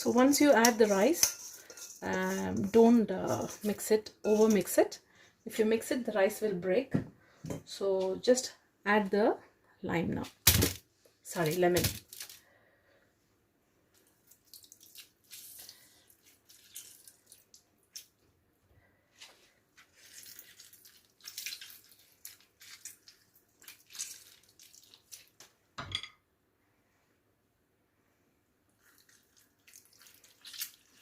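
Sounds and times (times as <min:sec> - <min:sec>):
liquid dripping and spattering: 0:14.2 - 0:18.2, 0:19.9 - 0:25.5, 0:28.8 - 0:31.0.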